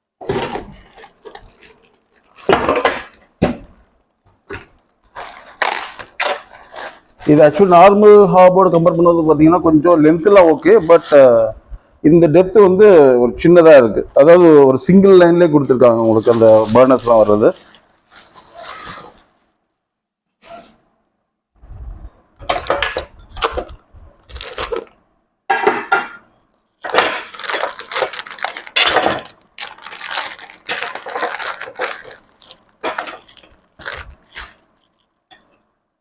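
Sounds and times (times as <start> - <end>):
packaging crunching and crinkling: 0.2 - 3.2, 3.8 - 8.2, 15.8 - 19.4, 22.6 - 25.0, 26.8 - 35.4.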